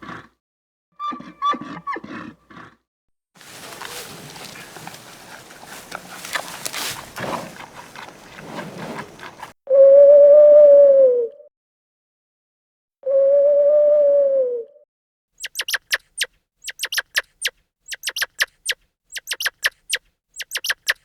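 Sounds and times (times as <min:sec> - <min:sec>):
animal calls: 0:03.4 - 0:09.6, 0:15.4 - 0:21.0.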